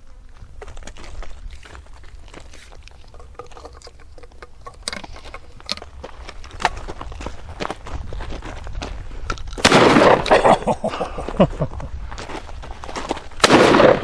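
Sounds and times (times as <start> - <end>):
shotgun shots: 9.6 - 10.4, 13.4 - 14.0.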